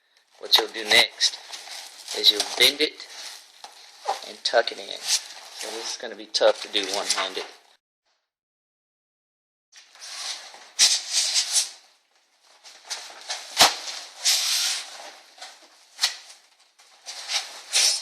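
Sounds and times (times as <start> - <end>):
foil insulation crinkling and scraping: 0.3 - 7.4.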